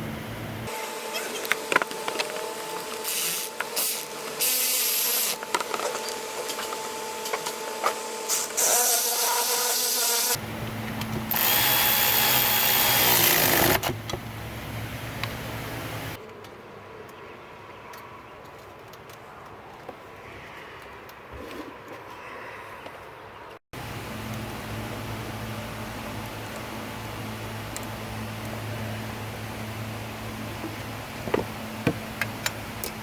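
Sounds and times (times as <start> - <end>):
cordless power driver whirring: 1.3 - 5.8, 11.3 - 14.0.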